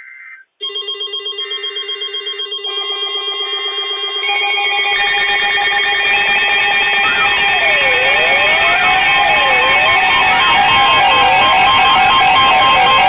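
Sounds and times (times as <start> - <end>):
weather alert radios beeping: 1.4 - 13.0.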